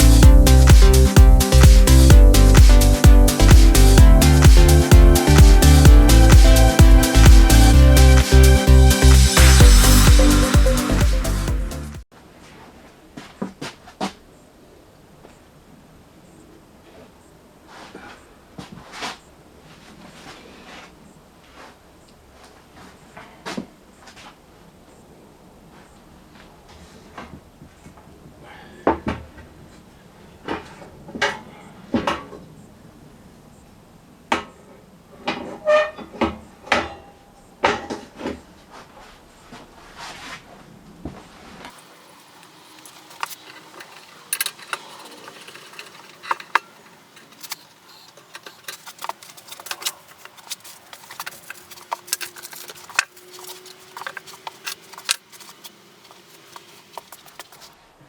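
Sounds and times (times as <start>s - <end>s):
hard objects clattering: 41.7s - 57.7s.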